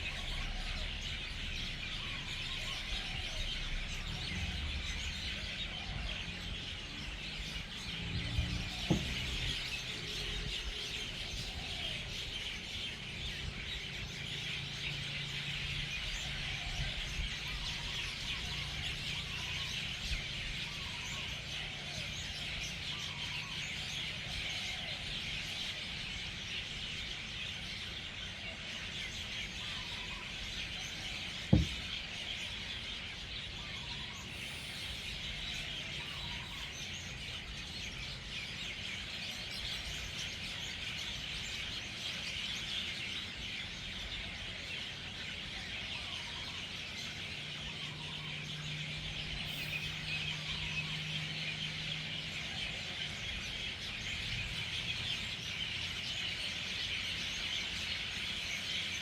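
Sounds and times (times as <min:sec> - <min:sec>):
flock of birds chattering: 0:00.0 - 0:59.0
brief knock: 0:08.8 - 0:09.4, 0:31.5 - 0:31.9.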